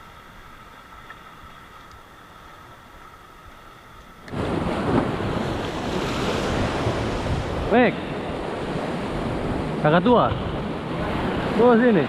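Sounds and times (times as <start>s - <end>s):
sea waves breaking on rocks: 4.3s - 12.0s
wind buffeting microphone: 4.3s - 12.0s.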